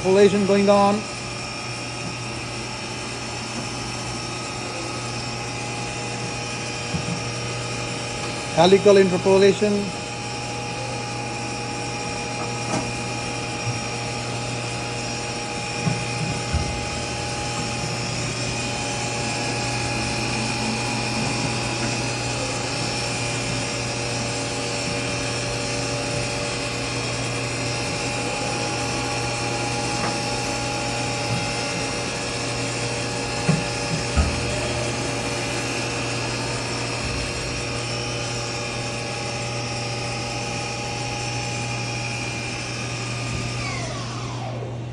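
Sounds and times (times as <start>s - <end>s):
machining center spindle hum and whine: 0.0s - 44.9s.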